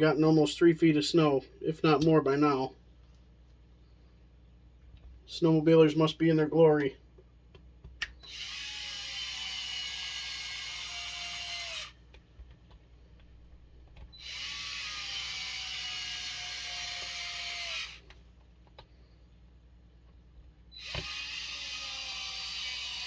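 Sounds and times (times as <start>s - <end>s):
power screwdriver driving screws: 20.8s - 23.0s.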